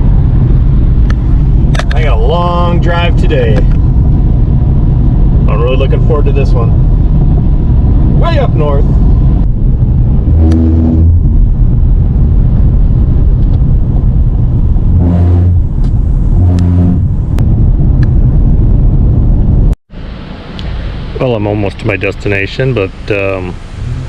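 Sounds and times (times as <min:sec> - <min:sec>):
car road and engine rumble: 0:00.0 - 0:24.0
short low droning tone: 0:08.9 - 0:19.8.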